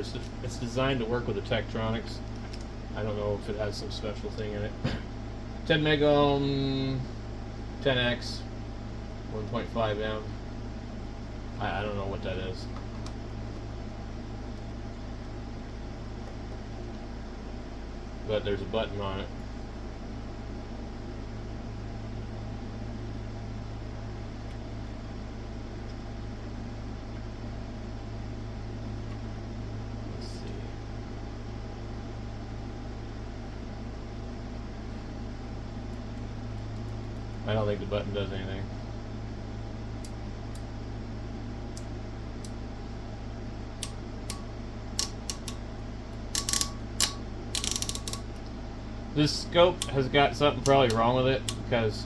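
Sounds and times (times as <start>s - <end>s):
fan-like hiss: 0.0s - 26.7s
low mains hum: 0.0s - 52.0s.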